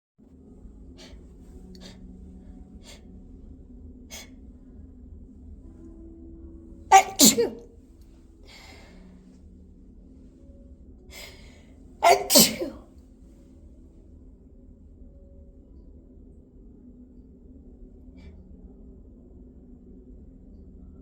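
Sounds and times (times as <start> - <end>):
loud sneeze: 6.9 - 7.6, 12.0 - 12.8
soft breath out: 8.5 - 9.2, 11.1 - 12.8.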